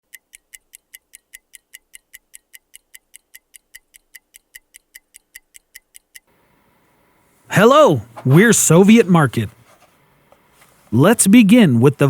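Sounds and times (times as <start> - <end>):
mechanical watch ticking: 0.0 - 6.3.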